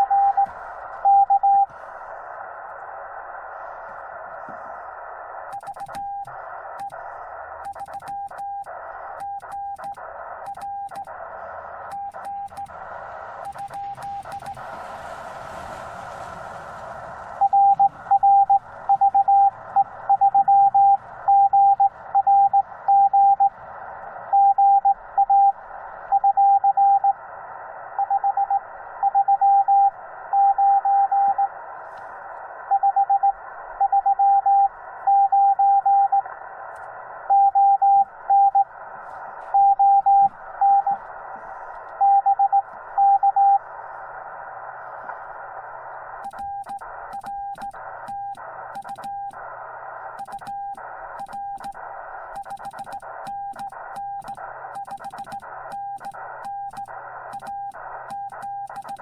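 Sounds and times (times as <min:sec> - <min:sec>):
radio band noise hiss: 0:00.0 - 0:29.2, 0:31.3 - 0:35.1, 0:36.1 - 0:37.3, 0:38.0 - 0:59.0.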